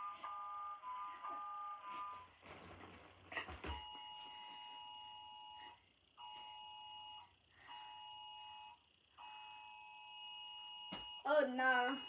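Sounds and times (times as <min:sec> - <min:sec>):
two-tone alarm tone: 0:03.7 - 0:12.0.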